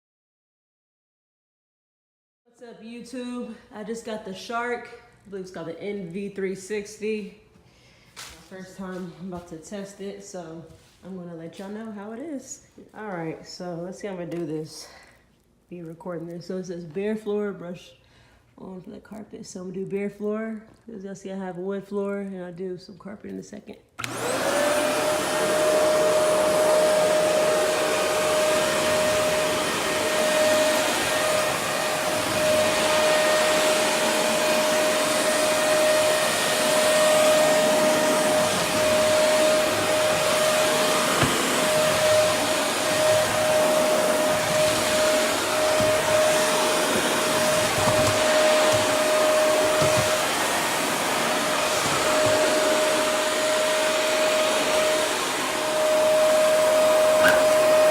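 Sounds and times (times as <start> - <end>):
vacuum cleaner motor whine: 24.0 - 57.9.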